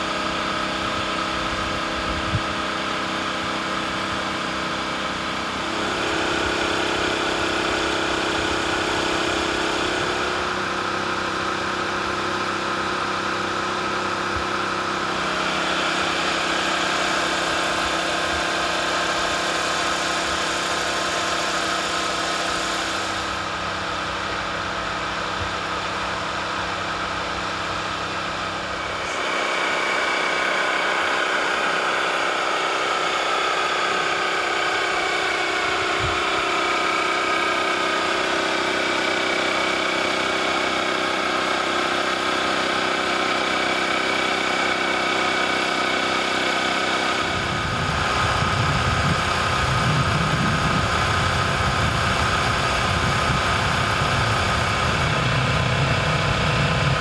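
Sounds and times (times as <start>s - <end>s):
jet engines whining: 14.3s - 57.0s.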